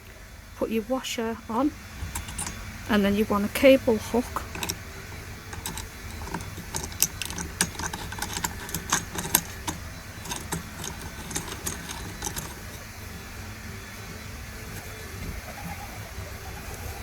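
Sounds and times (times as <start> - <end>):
small plastic and metal parts clicking: 2.0 - 2.7, 4.0 - 12.9.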